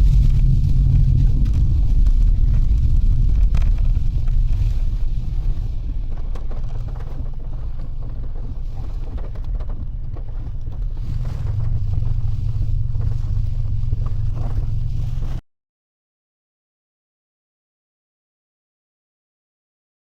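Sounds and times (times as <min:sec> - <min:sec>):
van engine rumble: 0:00.0 - 0:15.4
wind buffeting microphone: 0:00.0 - 0:15.4.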